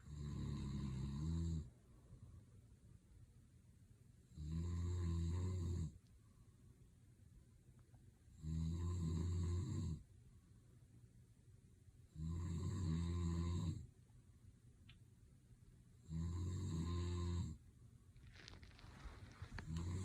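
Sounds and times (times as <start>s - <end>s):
man snoring: 0.0s - 1.7s, 4.3s - 6.0s, 8.4s - 10.0s, 12.1s - 13.8s, 16.0s - 17.6s, 19.6s - 20.0s.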